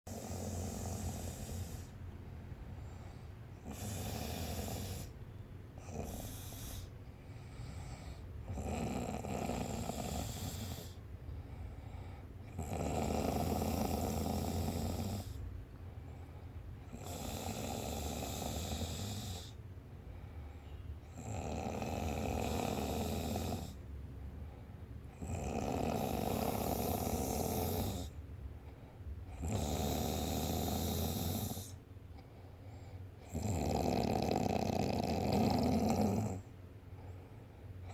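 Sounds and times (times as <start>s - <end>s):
quiet breaths: 0.0s - 37.9s
person snoring: 0.1s - 1.9s, 3.6s - 5.1s, 5.8s - 6.9s, 8.5s - 11.0s, 12.5s - 15.4s, 16.9s - 19.6s, 21.2s - 23.8s, 25.2s - 28.2s, 29.4s - 31.8s, 33.2s - 36.4s.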